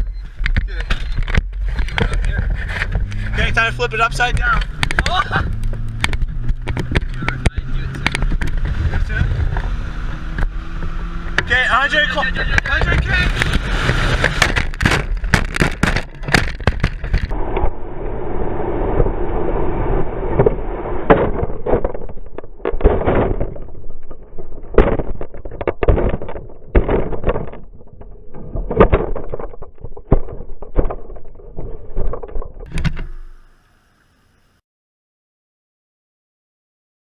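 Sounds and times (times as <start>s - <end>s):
road and wind rush: 0.0s - 33.5s
toy car tumbling and scraping: 0.3s - 9.7s, 11.4s - 17.4s, 20.3s - 33.3s.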